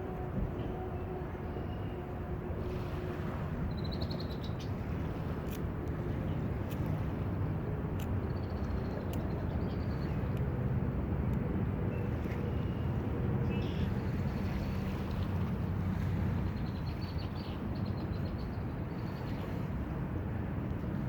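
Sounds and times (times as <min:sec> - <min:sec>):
lake waves on shore: 0:00.0 - 0:08.2, 0:09.0 - 0:21.0.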